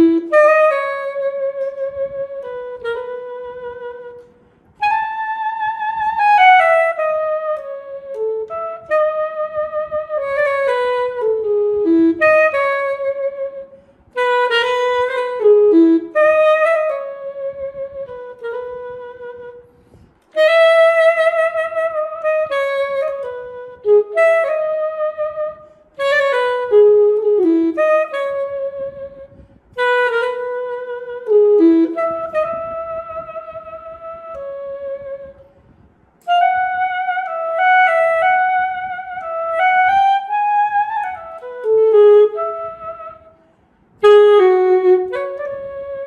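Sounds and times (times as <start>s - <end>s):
saxophone melody: 0.0s - 46.0s
player breaths: 19.8s - 20.3s.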